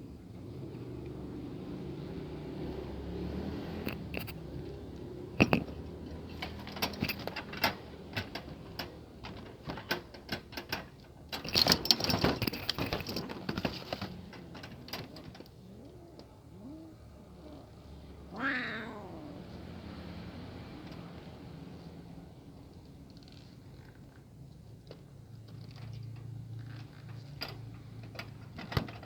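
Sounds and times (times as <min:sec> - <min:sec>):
sharp clicks and taps: 0:05.4 - 0:05.8
cat meowing: 0:15.8 - 0:19.5.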